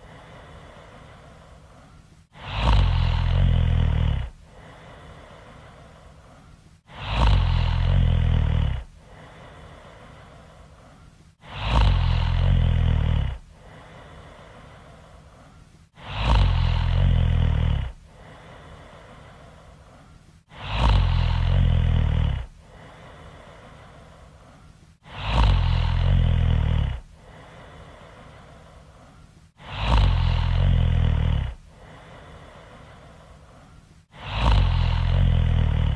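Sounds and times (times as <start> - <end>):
loud snoring: 2.3 - 5.9, 6.9 - 10.4, 11.4 - 15.0, 16.0 - 19.1, 20.5 - 24.0, 25.0 - 28.6, 29.6 - 33.1, 34.1 - 35.9.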